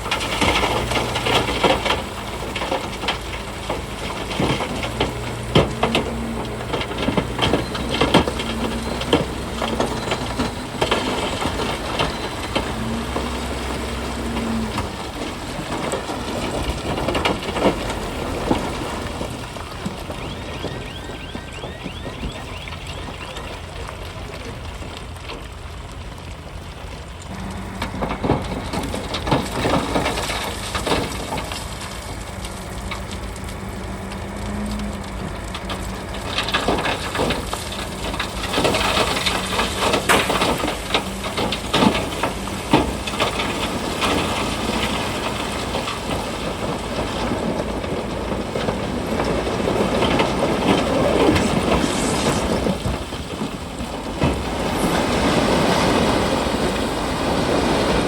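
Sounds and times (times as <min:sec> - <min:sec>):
steel tracks clanking: 0:00.0 - 0:26.0, 0:27.0 - 0:58.0
diesel engine running: 0:00.0 - 0:58.0.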